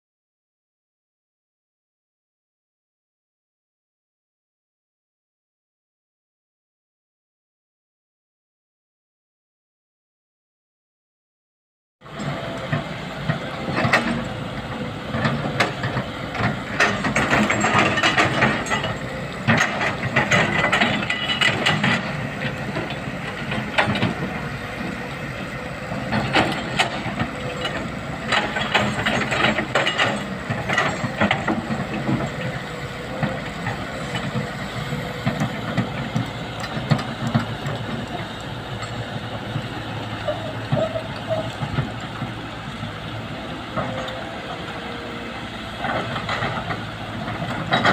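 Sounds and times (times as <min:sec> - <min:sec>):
excavator diesel engine running: 0:12.0 - 0:47.9.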